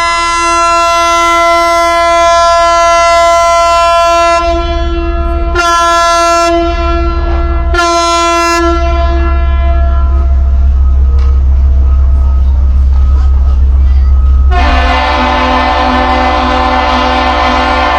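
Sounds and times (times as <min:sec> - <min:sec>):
deep air horn blasts: 0:00.0 - 0:10.9, 0:14.5 - 0:17.9
steady low rumble: 0:02.4 - 0:17.9.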